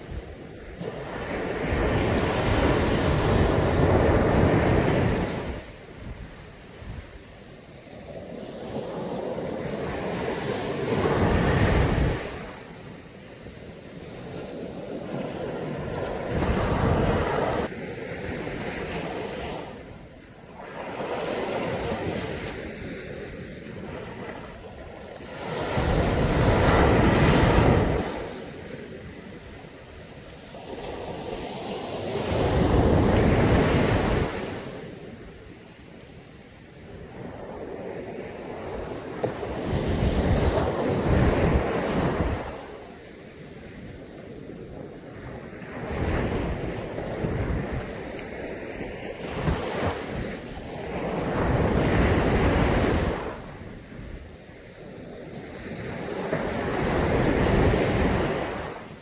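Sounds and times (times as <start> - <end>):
waves breaking on a beach: 0.0 - 59.0.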